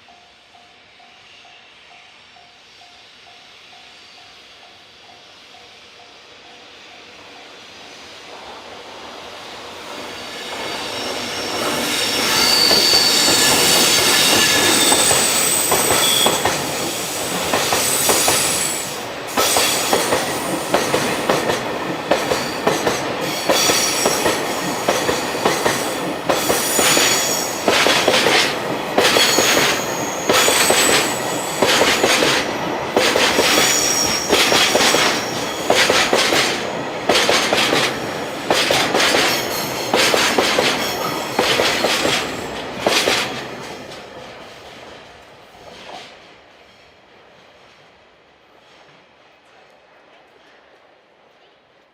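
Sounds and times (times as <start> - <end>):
train wheel squeal: 0.0 - 8.4, 9.3 - 44.1
wheels clacking over rail joints: 19.3 - 44.5.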